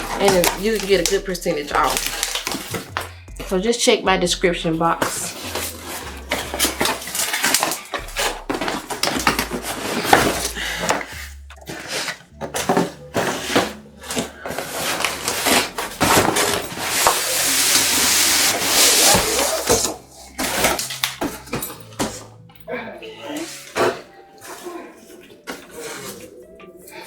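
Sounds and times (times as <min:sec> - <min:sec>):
cardboard box being opened: 0:05.0 - 0:21.0.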